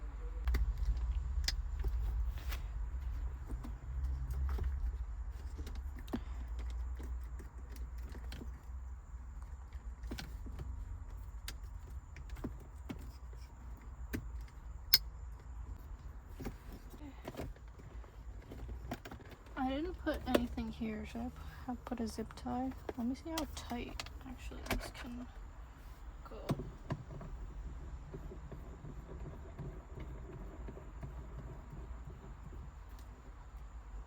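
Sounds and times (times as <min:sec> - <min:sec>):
low rumble: 0:00.0 - 0:06.0.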